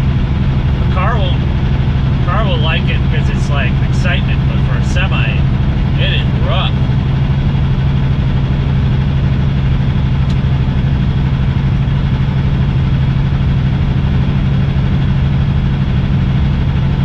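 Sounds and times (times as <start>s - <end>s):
road noise: 0.0s - 12.5s
truck diesel engine drone: 0.0s - 17.0s.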